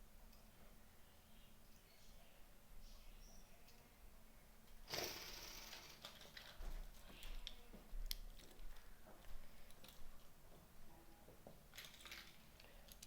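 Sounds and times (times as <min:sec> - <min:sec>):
plastic toy pieces rustling: 0:05.3 - 0:06.6, 0:11.7 - 0:13.0.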